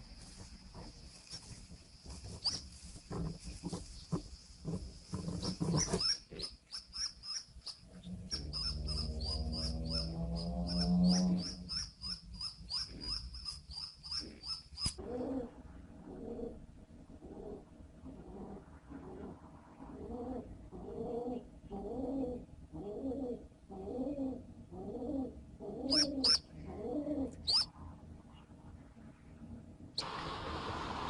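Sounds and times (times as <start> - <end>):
baby pigeon squeaking: 2.4 - 15.0, 25.0 - 27.7.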